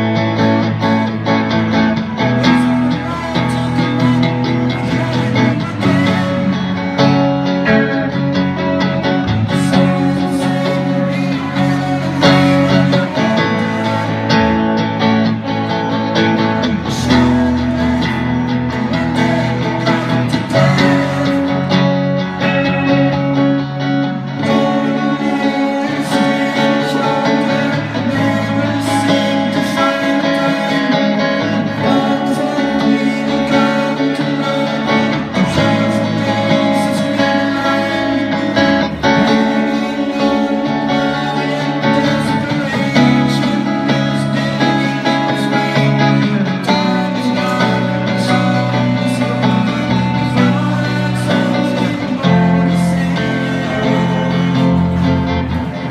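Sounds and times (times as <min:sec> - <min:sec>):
guitar-led music: 0:00.0 - 0:55.9.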